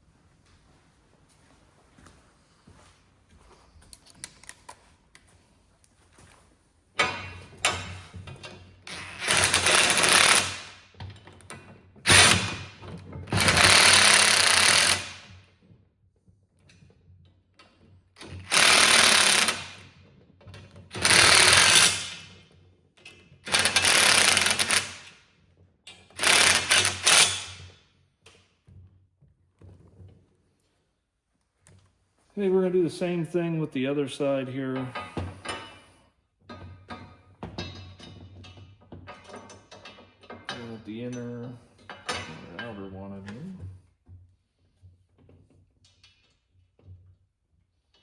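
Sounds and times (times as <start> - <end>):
impact driver bursts: 8.9 - 10.8, 12.1 - 15.4, 18.2 - 19.9, 20.9 - 22.3, 23.5 - 25.2, 26.2 - 27.7.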